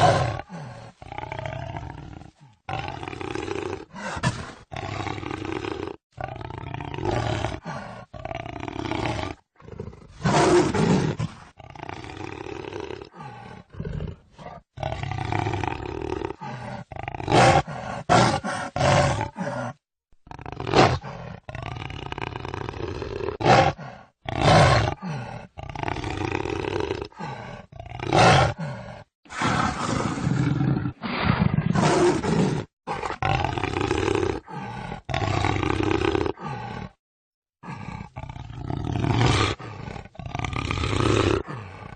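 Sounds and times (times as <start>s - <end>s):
jaguar roaring and growling: 0.0s - 37.0s, 37.6s - 41.9s.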